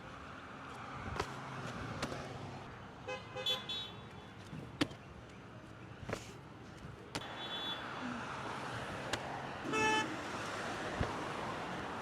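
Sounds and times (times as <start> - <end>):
passing traffic: 0.0 - 12.0
car horn honk: 9.7 - 10.1.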